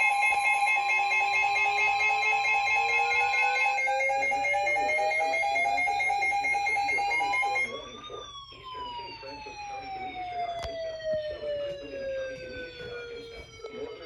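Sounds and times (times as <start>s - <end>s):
electronic alarm beeping: 0.0s - 14.0s
siren rising and falling: 0.0s - 14.0s.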